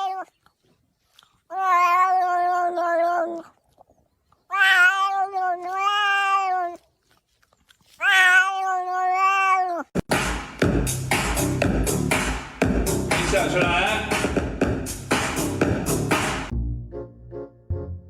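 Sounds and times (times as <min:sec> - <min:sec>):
cat yowling: 0:00.0 - 0:00.3, 0:01.5 - 0:03.5, 0:04.5 - 0:06.8, 0:08.0 - 0:09.9.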